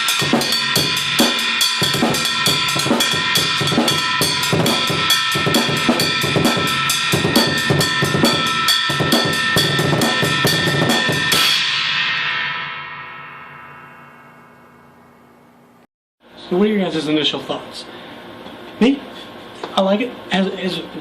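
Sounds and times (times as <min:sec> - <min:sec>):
bass drum: 0:00.0 - 0:11.6
snare drum: 0:00.0 - 0:11.6
china cymbal strikes: 0:00.0 - 0:15.7.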